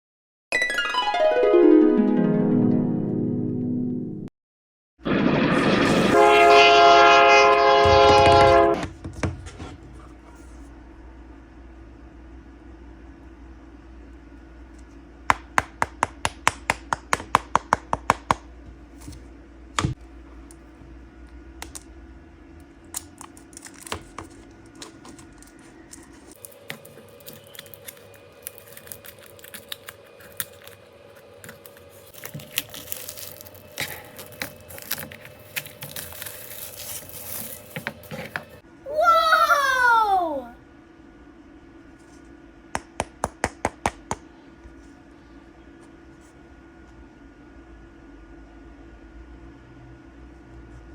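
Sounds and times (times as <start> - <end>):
packaging tearing: 23.0 - 24.4, 26.3 - 38.6.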